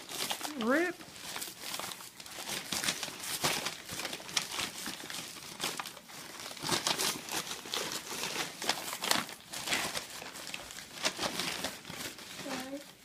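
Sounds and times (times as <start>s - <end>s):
wrapping paper tearing and crinkling: 0.0s - 13.0s.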